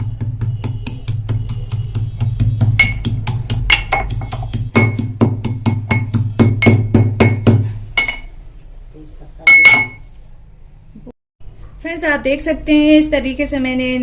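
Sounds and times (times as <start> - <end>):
pestle pounding spices in mortar: 0.0 - 8.3.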